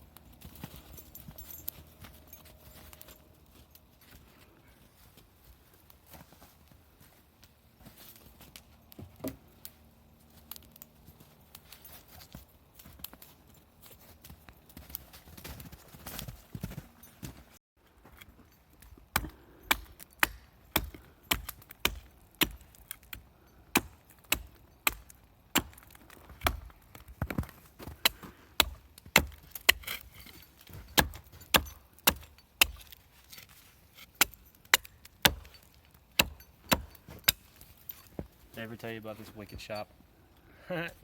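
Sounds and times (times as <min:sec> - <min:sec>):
hatchet striking wood: 0:09.0 - 0:09.4, 0:19.1 - 0:37.4.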